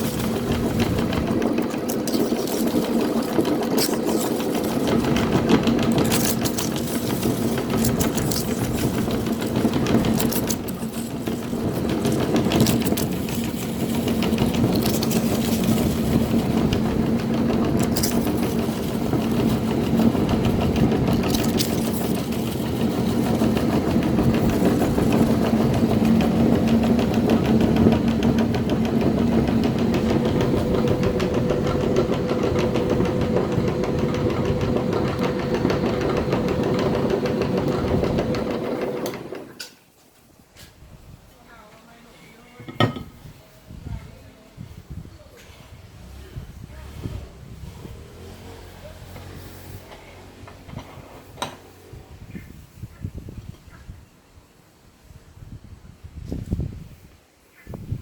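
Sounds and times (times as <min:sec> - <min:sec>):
chips crackling in grinder: 0:00.0 - 0:39.0
meat grinder motor humming: 0:00.0 - 0:39.6.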